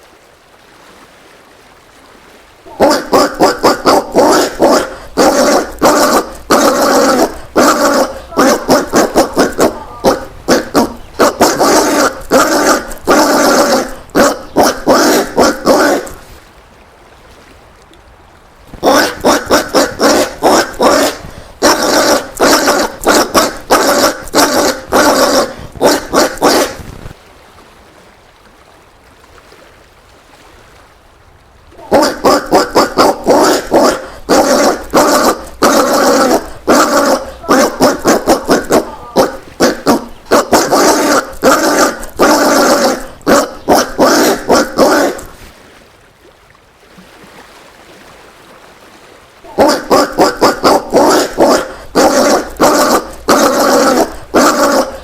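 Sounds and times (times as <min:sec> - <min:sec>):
peccaries calling rapidly: 0:02.7 - 0:16.3, 0:18.7 - 0:26.9, 0:31.8 - 0:45.5, 0:49.5 - 0:55.0.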